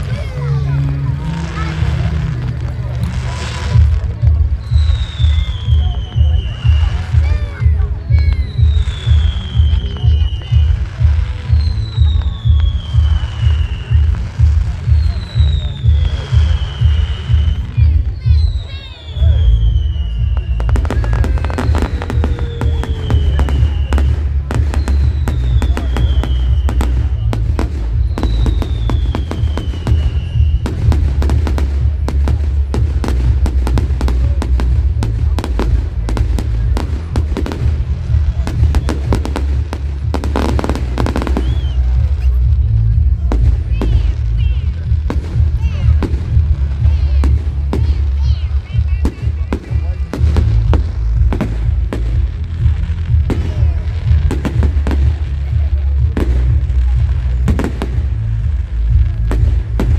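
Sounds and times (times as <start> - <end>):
fireworks bangs and crackles: 0.0 - 59.9
low rumble: 19.3 - 59.9.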